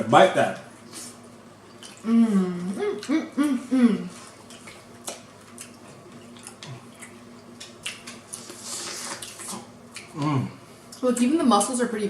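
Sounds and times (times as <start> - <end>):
wet chewing and squishing: 4.4 - 10.2.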